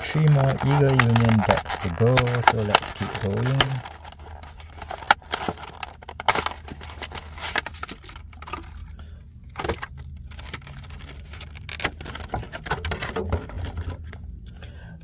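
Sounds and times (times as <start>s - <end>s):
plastic wrap rustling and crinkling: 0.0s - 8.8s, 9.6s - 14.0s.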